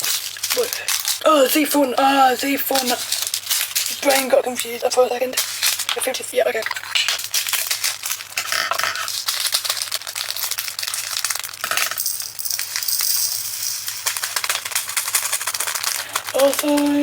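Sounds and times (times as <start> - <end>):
small beads pouring into plastic container: 7.3 - 17.0.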